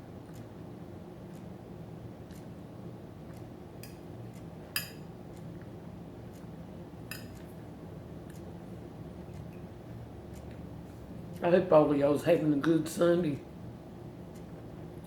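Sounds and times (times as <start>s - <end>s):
utensil clinking against dish: 4.8s - 5.1s, 7.1s - 7.4s.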